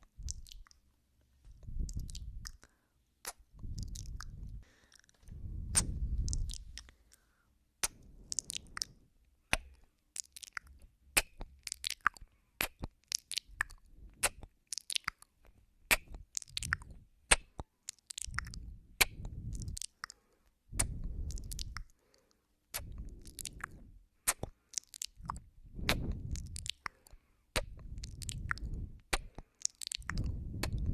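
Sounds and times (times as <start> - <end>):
wet mouth clicks and kissing: 0.0 - 0.8, 1.5 - 20.2, 20.8 - 22.0, 22.7 - 30.9
breaths blowing onto microphone: 25.6 - 26.6.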